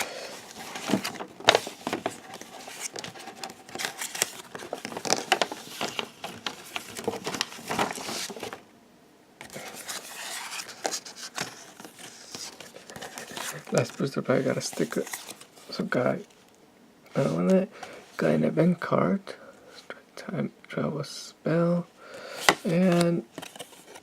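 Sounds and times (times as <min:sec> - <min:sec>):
cards rustling: 0:00.0 - 0:08.6, 0:09.4 - 0:16.2, 0:22.3 - 0:24.0.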